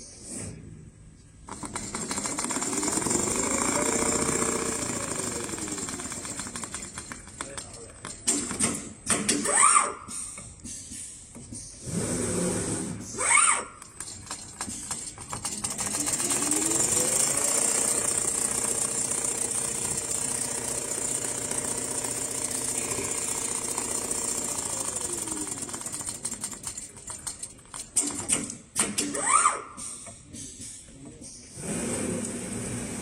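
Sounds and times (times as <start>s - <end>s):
sewing machine motor: 1.4s - 8.9s, 11.8s - 28.7s, 31.6s - 33.0s
sewing machine stitching: 1.4s - 9.2s, 11.8s - 29.1s, 31.6s - 33.0s.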